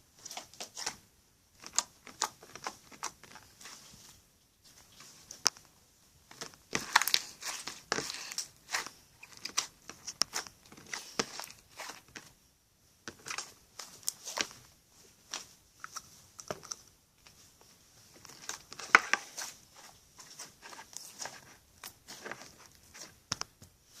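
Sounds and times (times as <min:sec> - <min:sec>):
slime squishing by hand: 0:00.2 - 0:03.9, 0:06.3 - 0:12.4.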